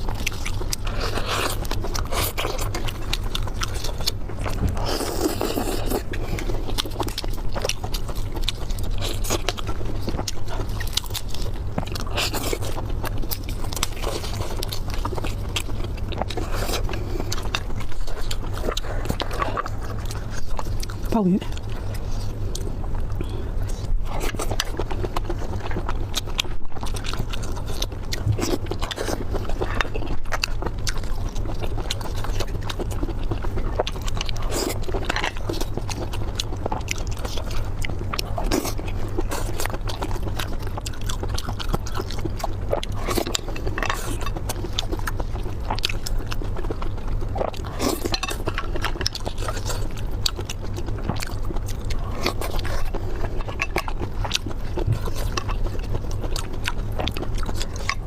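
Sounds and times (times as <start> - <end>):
chewing and biting food: 0.0 - 58.0
low hum: 0.0 - 58.0.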